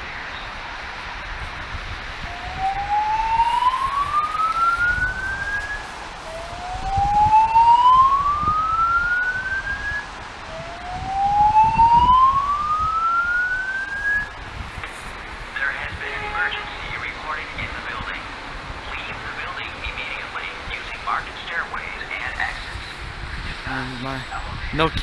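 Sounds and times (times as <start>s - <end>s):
fire alarm whoop tone: 2.2s - 14.4s.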